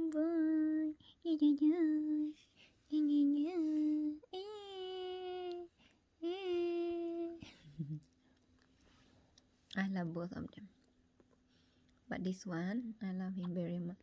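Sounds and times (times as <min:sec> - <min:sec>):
woman humming softly: 0:00.0 - 0:08.1.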